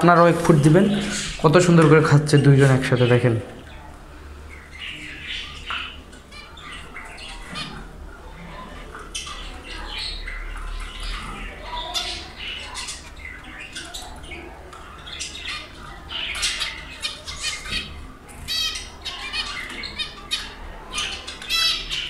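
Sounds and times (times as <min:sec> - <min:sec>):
small birds chirping: 0:00.2 - 0:22.0
bird trill: 0:04.5 - 0:22.0.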